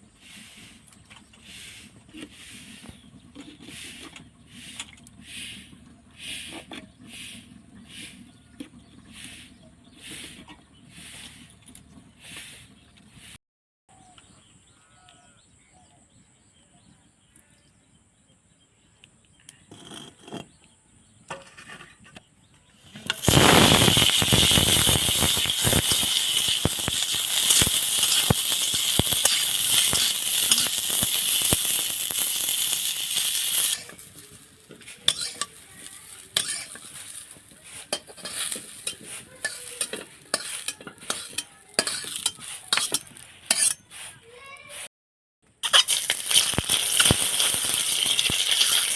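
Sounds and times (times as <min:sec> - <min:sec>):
food sizzling in hot oil: 0:23.0 - 0:43.8, 0:45.6 - 0:48.9.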